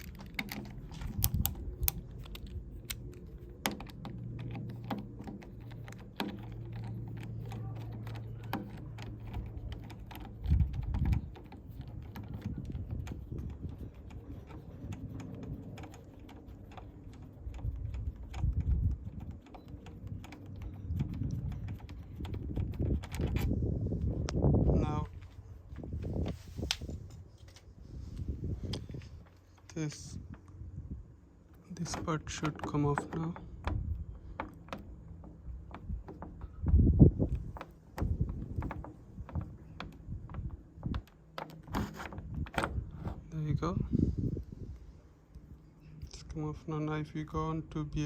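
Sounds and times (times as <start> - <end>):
screwdriver clicking and scraping: 0.0 - 24.4, 31.5 - 36.6, 37.2 - 43.4
low handling bumps: 0.0 - 45.9.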